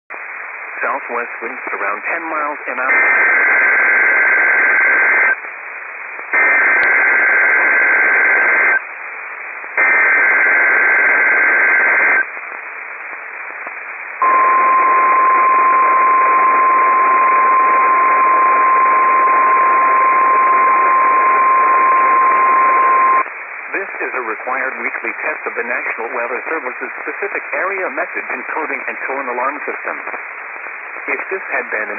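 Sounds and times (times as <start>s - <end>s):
radio hiss: 0.1s - 31.9s
steady alarm tone: 14.2s - 23.2s.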